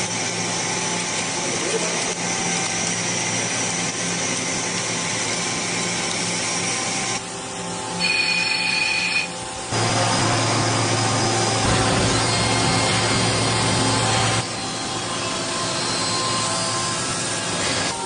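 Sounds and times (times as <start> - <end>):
cnc machine cutting: 0.0 - 18.0
spindle hum: 5.6 - 18.0.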